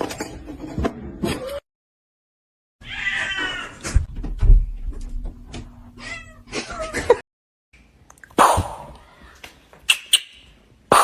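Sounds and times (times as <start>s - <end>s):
cat meowing: 2.8s - 3.8s, 6.0s - 6.9s.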